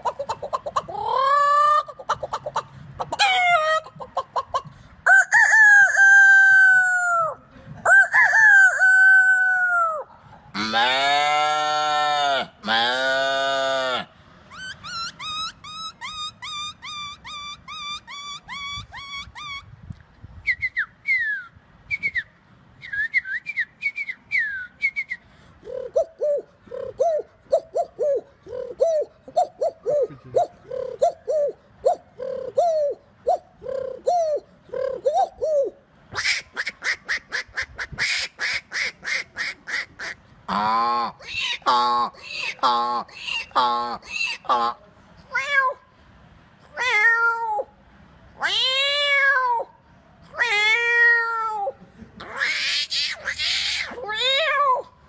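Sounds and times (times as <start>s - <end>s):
person imitating bird calls: 0.0s - 19.7s, 25.6s - 45.8s.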